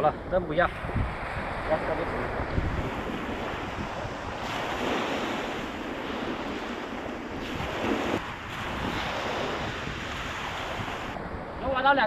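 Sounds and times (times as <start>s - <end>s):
surf washing onto beach: 0.0s - 12.0s
wind buffeting microphone: 0.0s - 12.0s.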